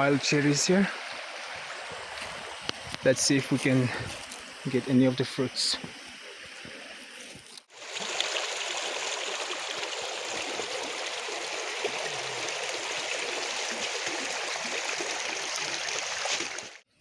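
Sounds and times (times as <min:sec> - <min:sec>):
river water flowing: 0:00.0 - 0:16.8.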